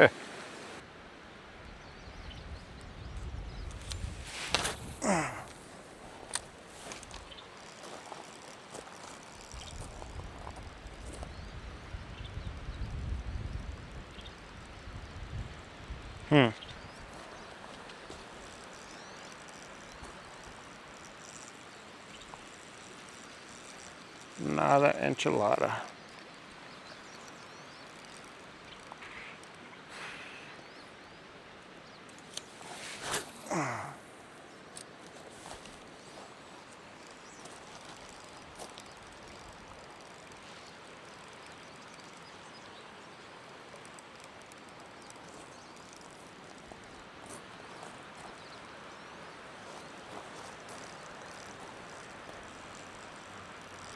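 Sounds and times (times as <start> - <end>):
even outdoor hiss: 0.0 - 53.9
fishing line whizzing: 3.9 - 5.7, 32.4 - 34.0
fishing rod swish: 32.4 - 33.5.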